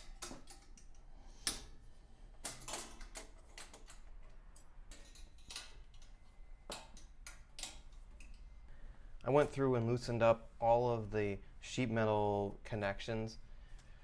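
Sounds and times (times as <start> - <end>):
sheet metal and tool clicks: 0.0 - 1.7, 2.4 - 8.4.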